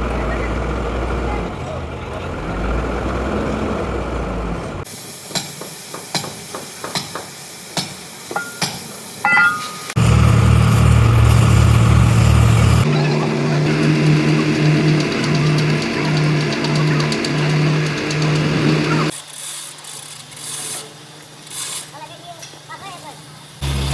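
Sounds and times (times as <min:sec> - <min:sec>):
large engine rumbling: 0:00.0 - 0:04.9, 0:09.4 - 0:19.1, 0:23.6 - 0:23.9
high squeal: 0:09.8 - 0:12.9.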